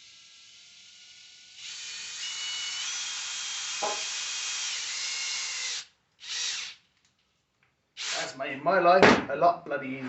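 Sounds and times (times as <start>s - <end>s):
power drill whining: 0.0s - 6.8s, 8.0s - 8.3s
knock: 3.8s - 4.0s, 9.0s - 9.3s.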